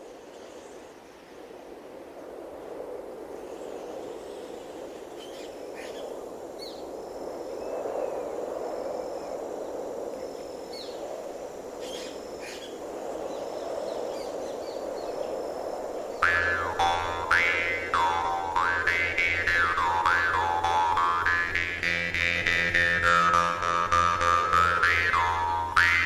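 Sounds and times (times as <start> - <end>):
music with sliding tones: 16.2 - 26.0.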